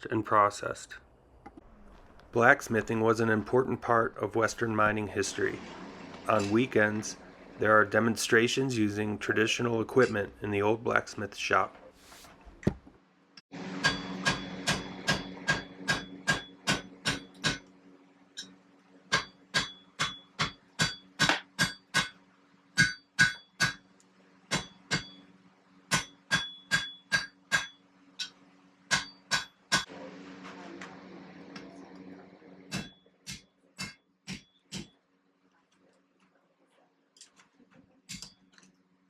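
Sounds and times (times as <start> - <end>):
low hum: 0.9 - 10.3
hammer striking iron on anvil: 13.8 - 17.6, 19.1 - 22.2, 22.8 - 23.9, 24.5 - 25.2, 25.9 - 29.9, 32.7 - 35.0.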